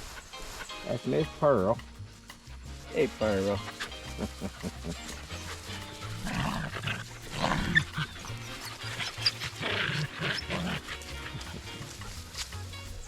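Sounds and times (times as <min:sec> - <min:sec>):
background music: 0:00.1 - 0:13.0
dogs growling in play: 0:03.1 - 0:12.5.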